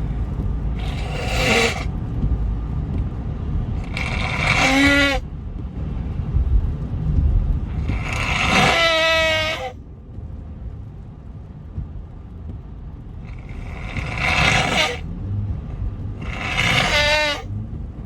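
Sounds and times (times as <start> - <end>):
steady low rumble: 0.0 - 18.0
man making nasal breathing sounds: 0.8 - 1.9.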